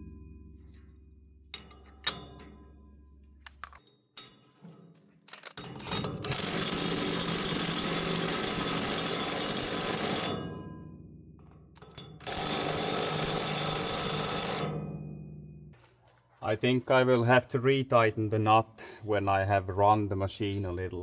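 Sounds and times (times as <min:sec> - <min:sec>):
impact wrench running: 0:06.0 - 0:10.4, 0:12.2 - 0:14.8.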